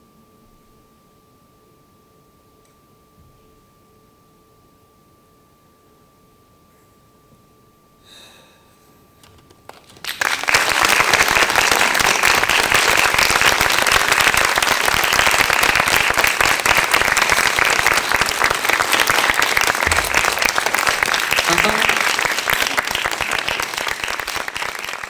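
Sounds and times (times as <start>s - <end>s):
audience applause: 9.7s - 25.0s.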